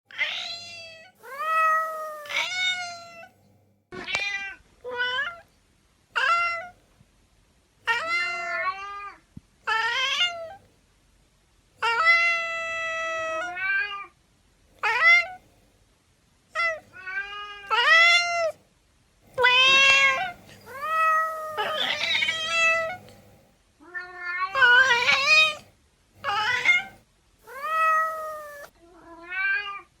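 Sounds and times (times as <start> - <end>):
cats meowing: 0.1 - 3.3, 14.8 - 15.4, 16.6 - 18.6, 19.3 - 23.2, 23.8 - 29.9.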